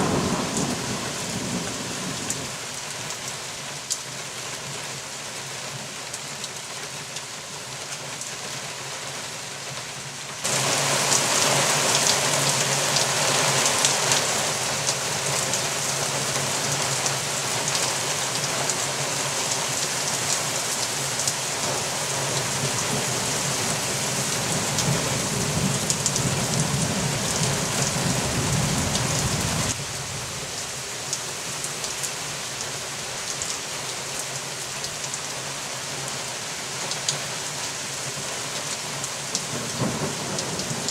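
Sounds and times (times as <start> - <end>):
heavy rain hissing: 0.0 - 3.8, 10.1 - 40.9.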